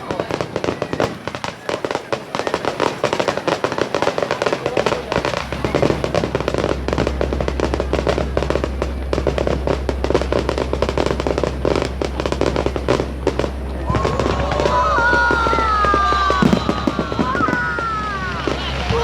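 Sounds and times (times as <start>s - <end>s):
fireworks crackling and banging: 0.0s - 19.0s
music playing: 14.0s - 19.0s.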